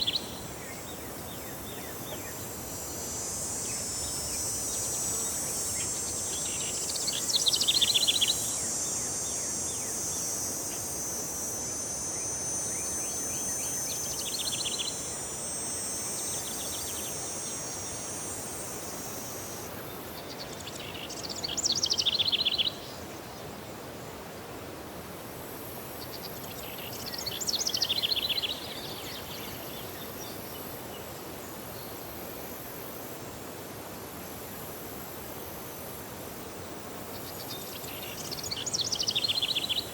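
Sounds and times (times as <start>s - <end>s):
high-pitched insect drone: 0.0s - 19.7s.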